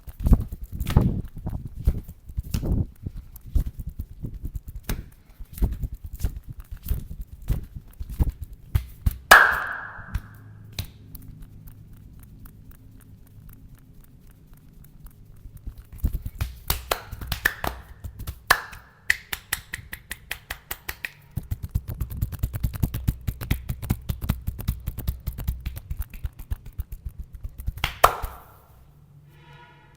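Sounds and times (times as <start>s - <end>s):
hands slapping body in massage: 0.1s - 2.8s, 3.5s - 11.0s, 15.9s - 26.8s, 27.5s - 28.7s.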